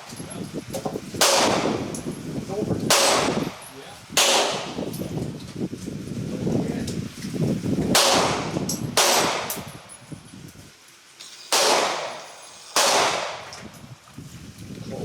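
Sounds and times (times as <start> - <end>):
gunshots: 1.2 - 1.9, 2.9 - 3.6, 4.2 - 4.8, 8.0 - 9.7, 11.5 - 13.5.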